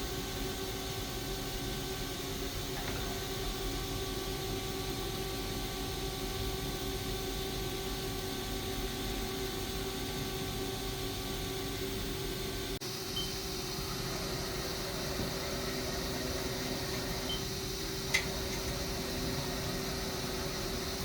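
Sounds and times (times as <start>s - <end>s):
lathe machine hum: 13.4s - 21.0s.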